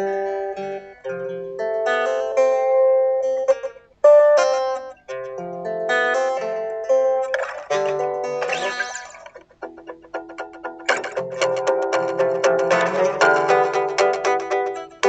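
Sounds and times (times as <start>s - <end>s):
solo guitar playing: 0.0s - 15.0s.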